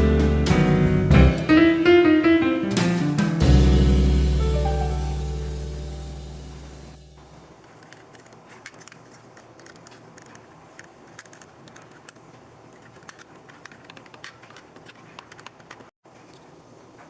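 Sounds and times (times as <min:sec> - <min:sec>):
faint room hiss: 0:00.0 - 0:15.3
small objects clicking and tapping: 0:07.6 - 0:15.9.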